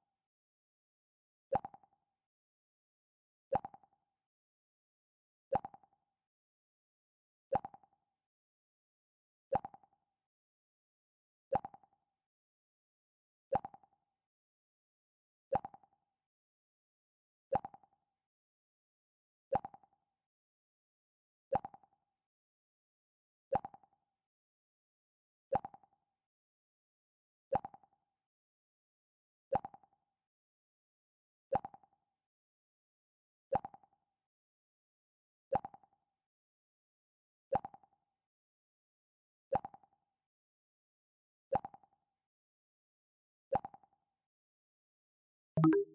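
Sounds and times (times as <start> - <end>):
short plucked alert tone: 45.6 - 45.9.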